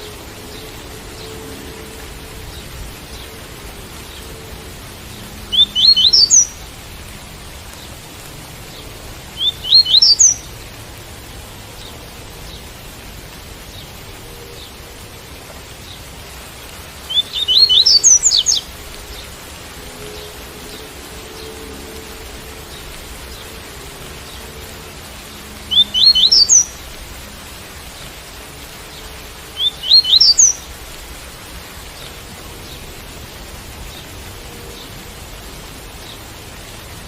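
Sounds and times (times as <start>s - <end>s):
steady rain: 0.0s - 37.0s
bird singing whistled notes: 5.5s - 6.6s, 9.4s - 10.5s, 17.1s - 19.2s, 25.7s - 26.8s, 29.6s - 30.7s.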